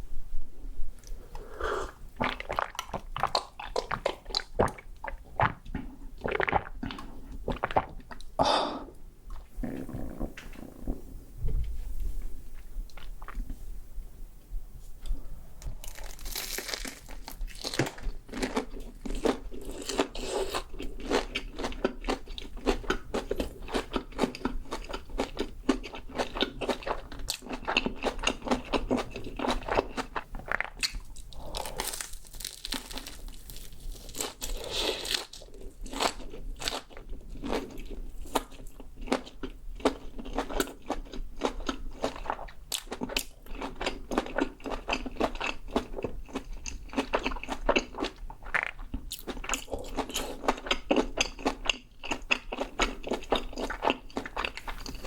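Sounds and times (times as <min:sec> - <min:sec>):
crunchy food chewing: 0:15.7 - 0:55.0.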